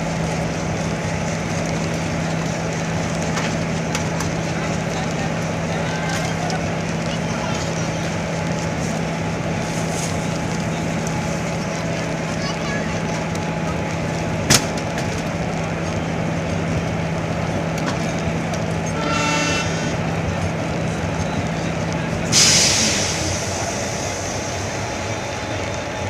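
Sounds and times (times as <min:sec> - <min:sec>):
train rolling along track: 0:00.0 - 0:26.0
sudden hiss: 0:22.3 - 0:25.4.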